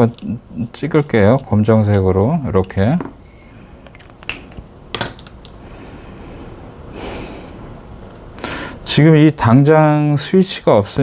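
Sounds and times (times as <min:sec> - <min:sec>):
plastic clicks: 0:03.8 - 0:05.6.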